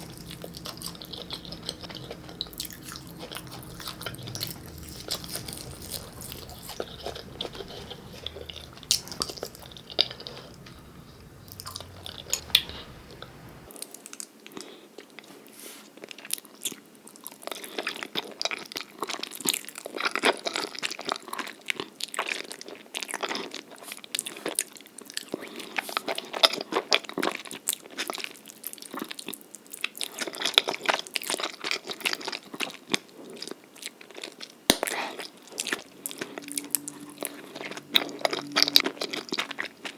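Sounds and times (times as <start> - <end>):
low hum: 0.0 - 13.7, 35.6 - 39.9
person chewing noodles: 0.0 - 13.7, 34.8 - 39.9.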